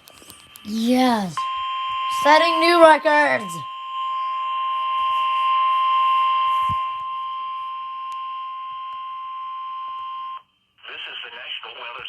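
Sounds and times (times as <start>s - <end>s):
steady warning alarm tone: 1.4s - 6.5s.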